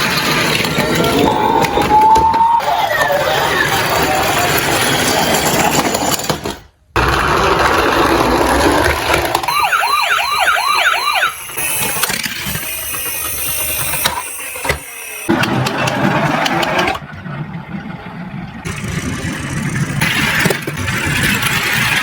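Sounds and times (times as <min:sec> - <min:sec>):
emergency vehicle siren yelp: 0:09.5 - 0:12.0.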